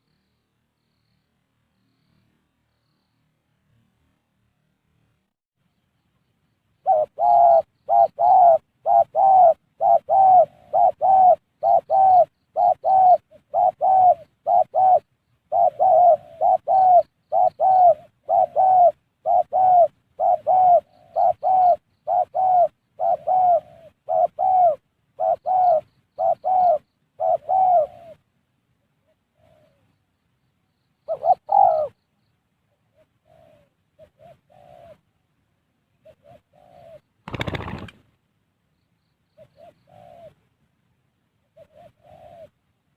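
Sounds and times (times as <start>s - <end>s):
dove cooing: 6.8s - 28.3s, 29.0s - 29.9s, 31.0s - 32.0s, 32.7s - 35.1s, 36.0s - 37.9s, 39.4s - 40.4s, 41.4s - 42.6s.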